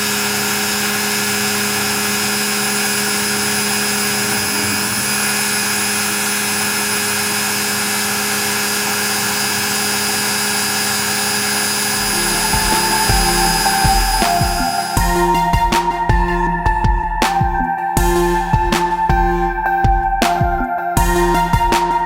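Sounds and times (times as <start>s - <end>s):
router motor whining: 0.0s - 15.2s.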